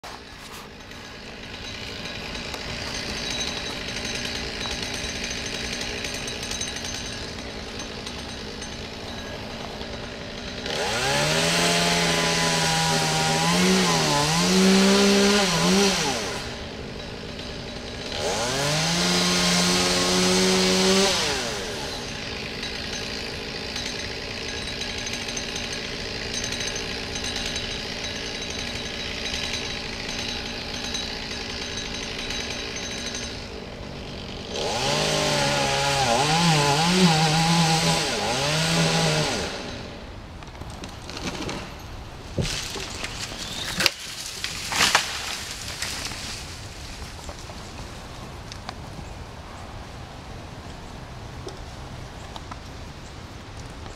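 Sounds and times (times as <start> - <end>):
chainsaw revving and idling: 0.1 - 40.1.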